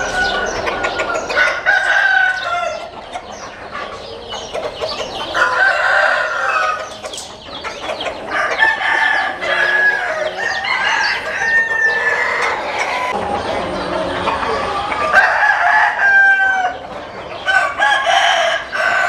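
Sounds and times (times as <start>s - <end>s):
hens clucking: 0.0s - 19.0s
roosters crowing: 0.0s - 19.0s.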